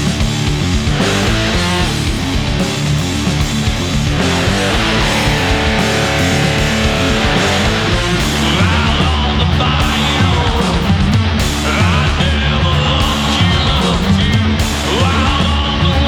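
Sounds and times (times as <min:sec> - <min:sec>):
bass guitar: 0:00.0 - 0:16.0
distorted electric guitars: 0:00.0 - 0:16.0
drums: 0:00.0 - 0:16.0.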